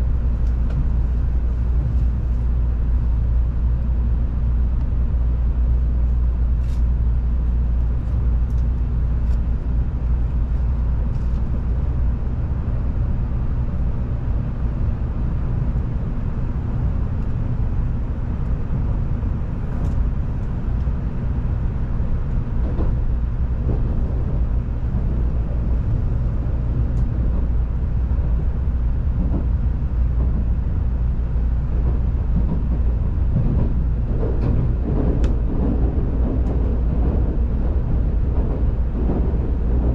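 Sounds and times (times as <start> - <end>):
train cabin rumble: 0.0 - 39.9.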